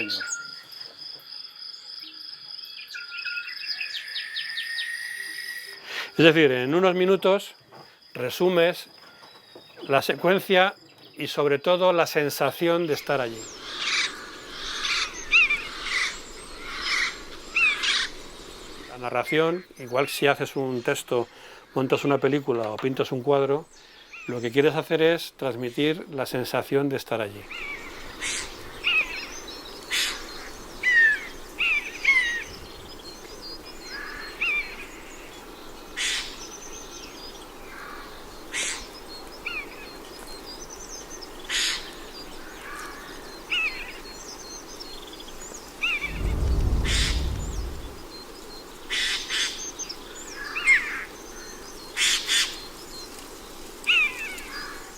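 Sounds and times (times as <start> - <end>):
birds chirping: 0.0 - 0.8, 45.9 - 48.0
low rumble: 46.0 - 48.0.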